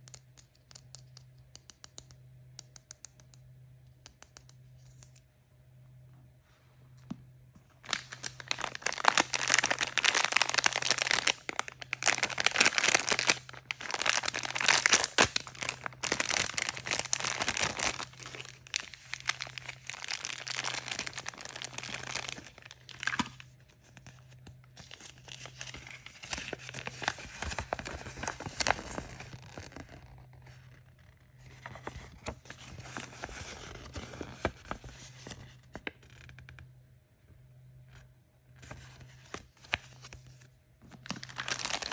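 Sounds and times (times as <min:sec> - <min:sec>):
packaging tearing and crinkling: 0:07.8 - 0:30.3, 0:41.0 - 0:41.9.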